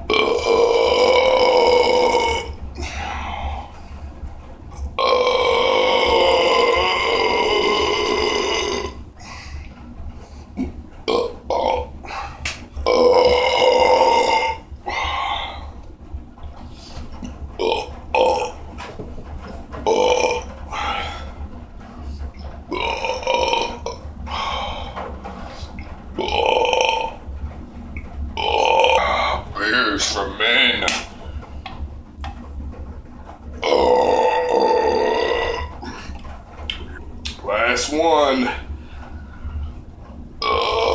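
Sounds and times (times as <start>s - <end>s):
loud belches: 0.0s - 3.8s, 4.8s - 9.1s, 10.6s - 15.7s, 17.2s - 21.4s, 22.3s - 27.6s, 28.4s - 31.2s, 33.6s - 38.8s, 40.4s - 40.9s.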